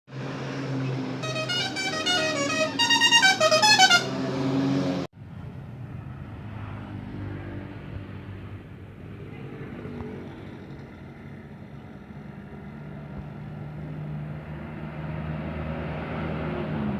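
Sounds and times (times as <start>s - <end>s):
traffic noise: 0.1s - 16.9s
low engine drone: 1.2s - 4.1s
musical bus horn tune: 1.2s - 4.4s.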